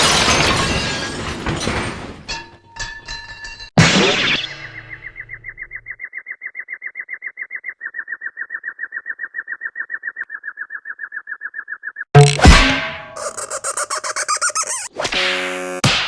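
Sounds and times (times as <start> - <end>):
rapid high cartoon chirps: 13.2 - 15.0.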